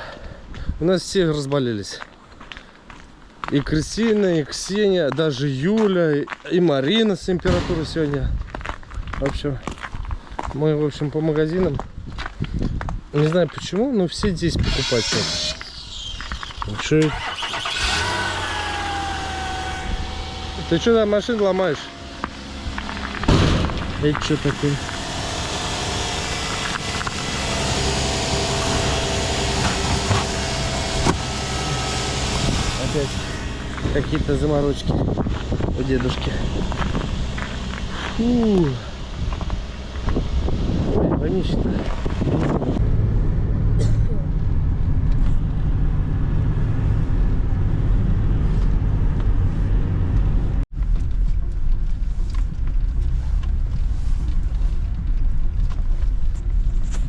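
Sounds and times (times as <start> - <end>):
engine and road rumble: 0.0 - 57.0.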